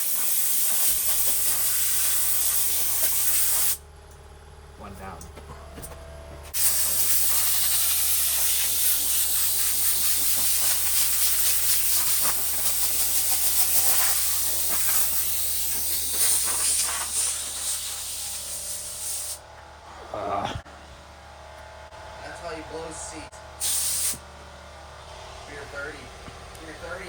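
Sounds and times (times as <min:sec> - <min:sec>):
compressed air blow gun hissing: 0:00.0 - 0:03.8, 0:06.5 - 0:19.4, 0:23.6 - 0:24.2.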